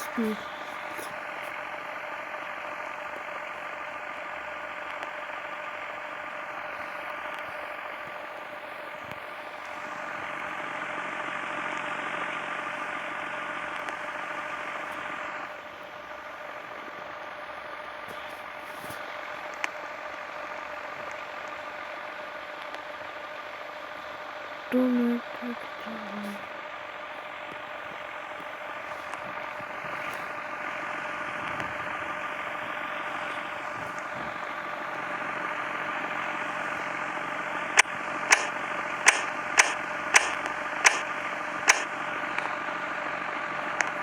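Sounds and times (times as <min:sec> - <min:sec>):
ceiling fan humming and whirring: 0:00.0 - 0:44.0
sharp click: 0:37.8 - 0:41.1, 0:41.7 - 0:41.9.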